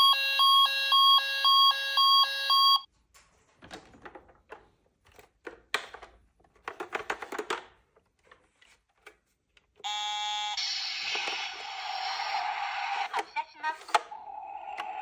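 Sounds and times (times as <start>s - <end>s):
toy electronic alarm tone: 0.0s - 2.9s, 9.9s - 13.3s.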